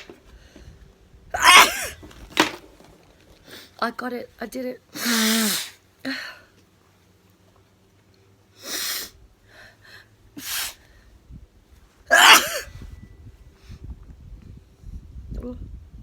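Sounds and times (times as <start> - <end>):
woman sneezing: 1.4 - 2.0, 12.1 - 12.7.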